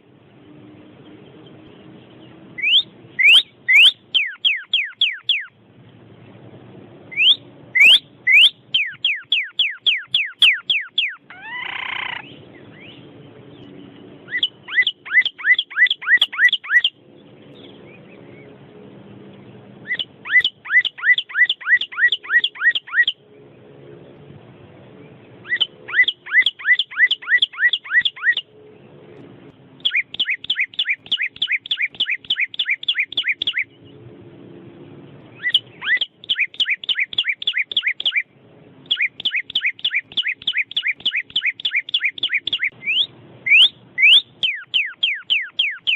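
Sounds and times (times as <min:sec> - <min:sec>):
songbird whistled song: 0:01.0 - 0:05.6, 0:07.1 - 0:18.6, 0:19.4 - 0:23.5, 0:25.0 - 0:29.0, 0:29.8 - 0:34.1, 0:35.2 - 0:45.9
harsh falling bird call: 0:07.1 - 0:12.3.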